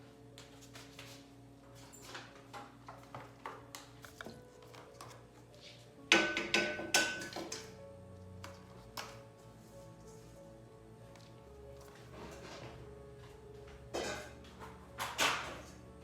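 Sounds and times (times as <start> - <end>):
soft background music: 0.0 - 16.0
kitchen containers clicking and knocking: 6.1 - 7.8, 14.0 - 15.7
clatter of hard items: 13.9 - 15.8.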